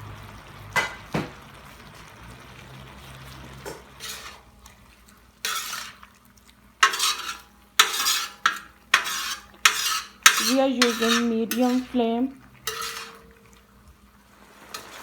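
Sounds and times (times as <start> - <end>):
utensil scraping pan: 3.7 - 4.5, 5.4 - 6.1, 6.8 - 13.6
utensil knocking on pan: 6.8 - 11.9.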